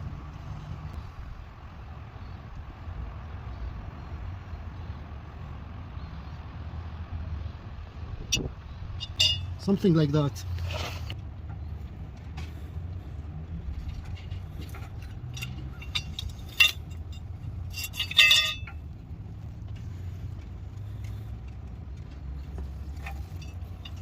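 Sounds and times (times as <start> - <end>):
metal tools clinking: 9.0 - 9.8, 13.7 - 18.9, 22.4 - 24.0.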